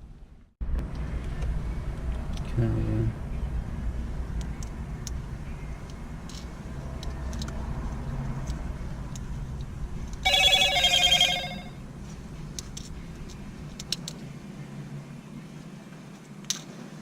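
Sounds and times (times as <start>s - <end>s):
electronic ringing tone: 10.3s - 11.8s.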